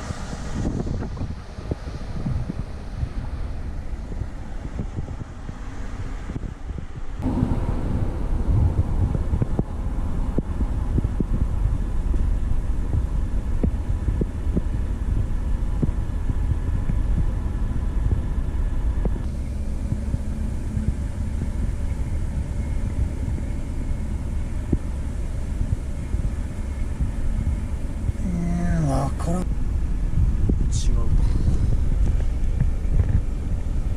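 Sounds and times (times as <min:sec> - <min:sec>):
road noise: 0:00.0 - 0:33.9
vehicle engine rumble: 0:00.0 - 0:33.9.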